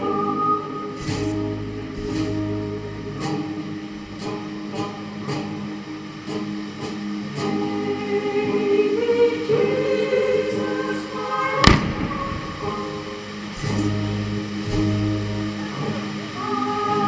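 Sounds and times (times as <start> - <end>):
music with singing: 0.0 - 17.0
loud firework bang: 11.6 - 12.5.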